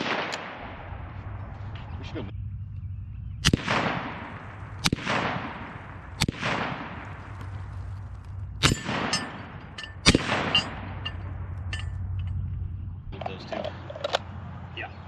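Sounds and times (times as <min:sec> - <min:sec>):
rifle shots echoing: 0:00.0 - 0:01.5, 0:03.4 - 0:12.2
light metallic clinks: 0:08.6 - 0:12.5.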